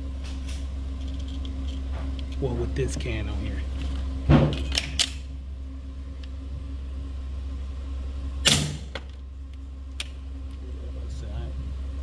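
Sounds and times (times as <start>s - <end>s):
steady low hum: 0.0s - 12.0s
suppressed gunshot: 8.4s - 9.0s.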